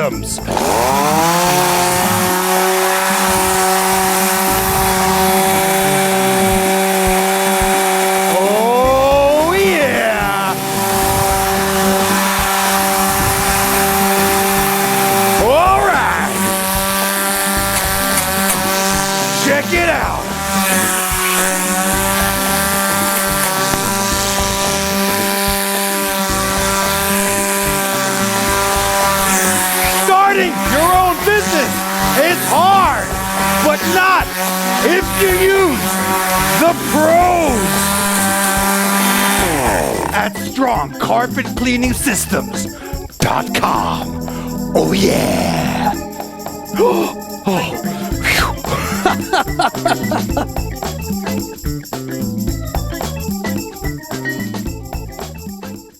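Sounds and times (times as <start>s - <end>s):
chainsaw engine at high revs: 0.0s - 40.5s, 42.1s - 51.0s.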